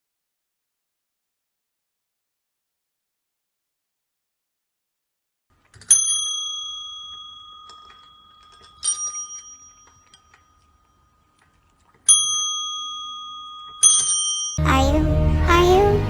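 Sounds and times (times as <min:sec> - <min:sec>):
small metal bell ringing: 0:05.8 - 0:11.2, 0:12.1 - 0:14.6.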